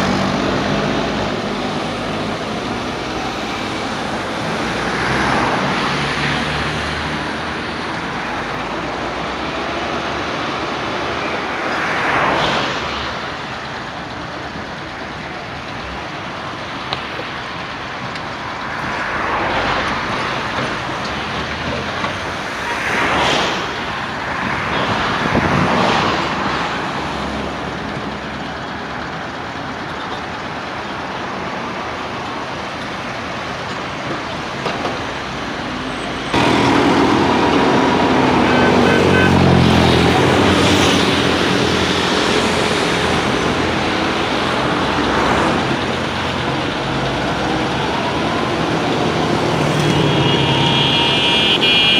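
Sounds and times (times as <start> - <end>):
road traffic passing: 0.0 - 51.9
engine revving: 36.3 - 51.9.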